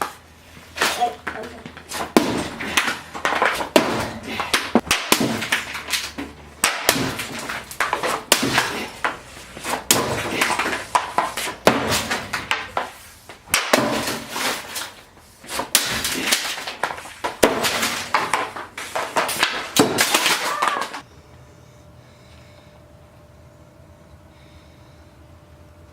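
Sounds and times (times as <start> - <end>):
hockey pucks smashing a laptop: 0.8 - 21.0.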